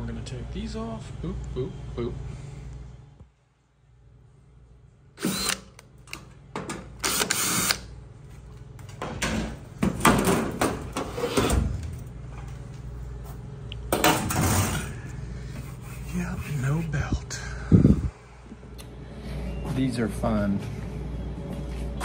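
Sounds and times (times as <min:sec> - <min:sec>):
power drill driving screws: 0:05.2 - 0:05.8, 0:07.0 - 0:07.9.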